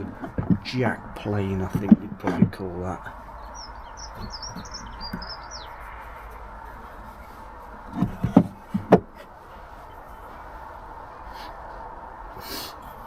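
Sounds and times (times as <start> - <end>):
sharp knocks: 0.0 - 3.0, 7.9 - 9.2
small bird twittering: 3.3 - 6.4.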